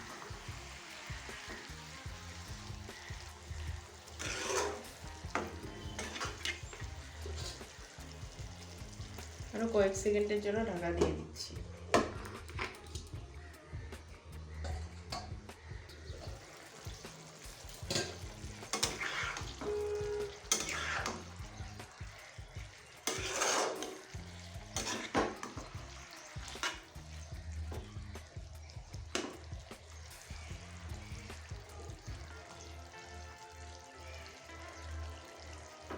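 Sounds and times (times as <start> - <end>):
soft background music: 0.0 - 35.9
utensil scraping metal pan: 2.3 - 8.0, 17.3 - 21.4, 22.8 - 27.2.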